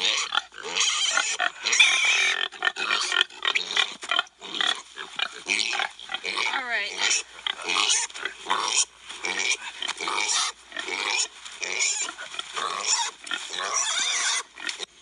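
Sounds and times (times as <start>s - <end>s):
pigs squealing: 0.0s - 15.0s.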